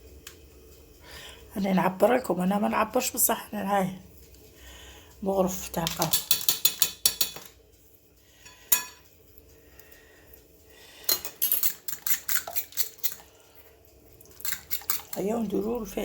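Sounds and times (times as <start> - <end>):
metal spoon clinking against bowl: 5.8 - 7.6, 8.4 - 9.1, 11.0 - 13.2.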